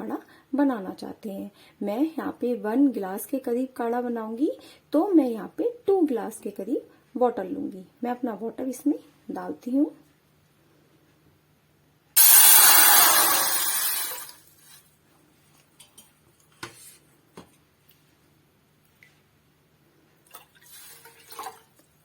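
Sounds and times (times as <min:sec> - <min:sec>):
water pouring into a pan: 0:12.2 - 0:14.4.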